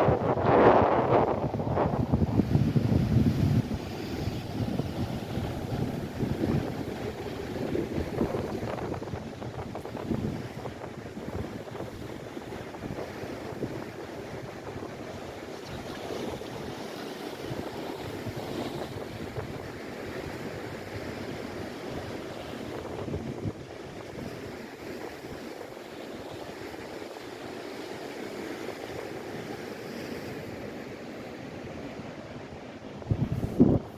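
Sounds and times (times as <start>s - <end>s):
wind rumbling on microphone: 0.0s - 25.5s, 31.9s - 33.9s
sea waves breaking on rocks: 0.1s - 25.7s.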